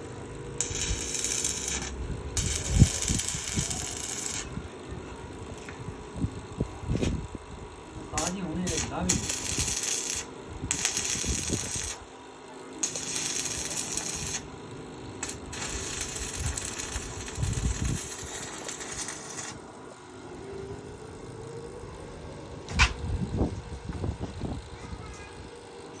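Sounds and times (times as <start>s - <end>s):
welding arc crackling and hissing: 0.0s - 4.6s, 8.1s - 12.1s, 12.8s - 19.6s.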